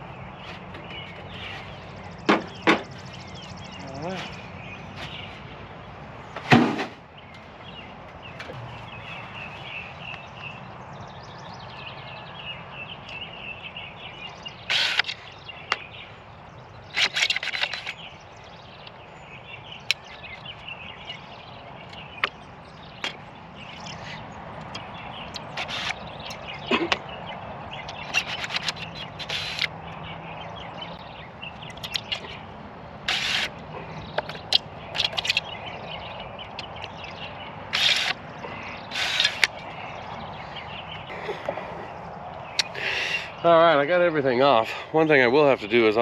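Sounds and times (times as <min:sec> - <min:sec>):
faint chirping: 0:13.6 - 0:43.5
sheet-metal downspout clattering: 0:14.0 - 0:40.2
sharp metal ticks: 0:14.4 - 0:15.9, 0:30.9 - 0:38.2.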